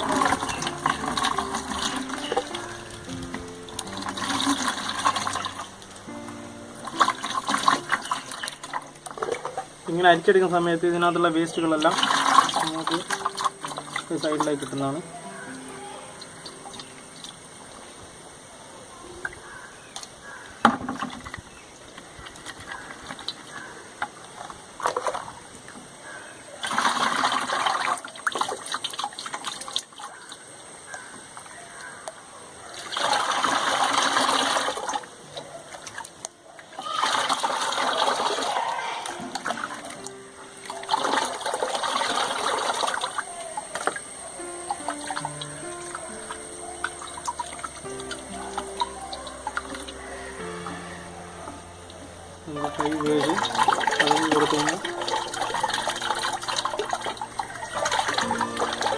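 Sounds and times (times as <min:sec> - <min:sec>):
slurry splashing and pouring: 0:00.0 - 0:06.0, 0:06.8 - 0:10.4, 0:11.5 - 0:15.0, 0:26.6 - 0:30.4, 0:32.7 - 0:36.2, 0:36.8 - 0:44.1, 0:52.5 - 0:58.9
slurry trickling: 0:00.0 - 0:18.0, 0:32.7 - 0:58.9.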